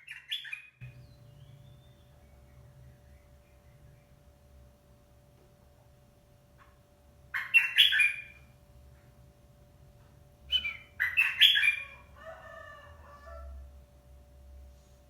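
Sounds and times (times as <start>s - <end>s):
bird chirping calls: 0.0s - 4.3s, 7.3s - 8.5s, 10.5s - 12.3s
faint steady hum: 0.8s - 15.0s
bird warbling: 7.3s - 8.4s, 10.5s - 12.2s.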